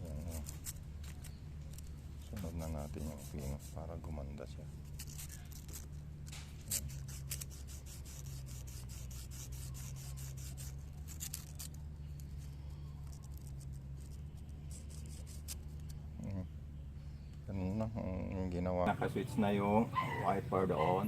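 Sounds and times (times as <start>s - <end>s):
steady low hum: 0.0s - 21.0s
sandpaper scraping strokes: 2.4s - 11.8s.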